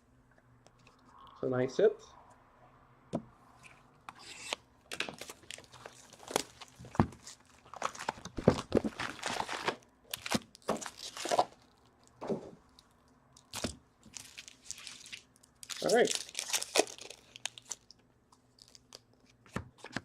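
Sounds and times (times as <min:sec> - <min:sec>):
foil wrappers tearing and crinkling: 0:04.4 - 0:11.9, 0:13.4 - 0:18.0, 0:18.6 - 0:19.0.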